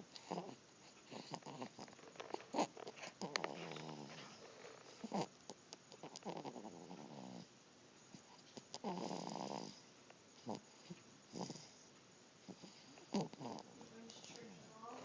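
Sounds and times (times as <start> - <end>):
drawn-out pitched snores: 0.2 - 5.4, 6.0 - 7.5, 8.7 - 11.8, 12.5 - 13.8.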